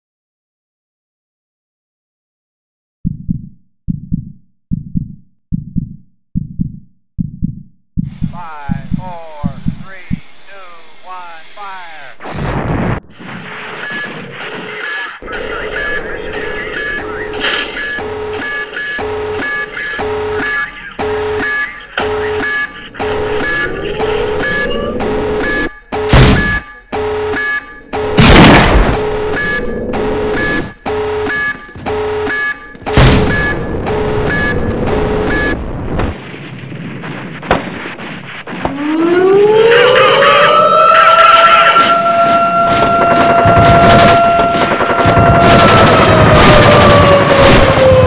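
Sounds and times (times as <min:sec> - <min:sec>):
muffled heartbeat thumps: 0:03.0 - 0:10.8
rising whine: 0:08.1 - 0:14.1, 0:22.9 - 0:25.8, 0:38.4 - 0:48.0
toy alarm beeping: 0:14.8 - 0:28.2, 0:29.0 - 0:35.6, 0:39.6 - 0:47.3.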